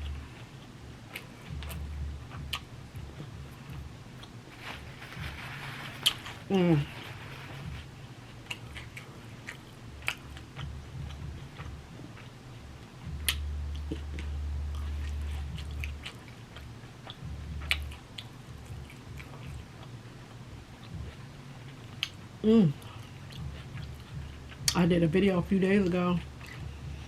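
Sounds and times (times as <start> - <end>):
close-up chewing and mouth smacks: 0.2 - 5.8, 8.4 - 22.2, 22.8 - 24.8
low rumble: 1.5 - 8.0.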